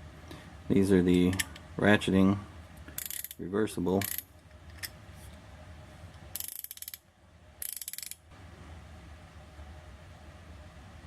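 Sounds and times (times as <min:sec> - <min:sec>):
ratchet wrench clicking: 0:03.0 - 0:03.4, 0:04.0 - 0:04.3, 0:06.4 - 0:07.0, 0:07.6 - 0:08.2.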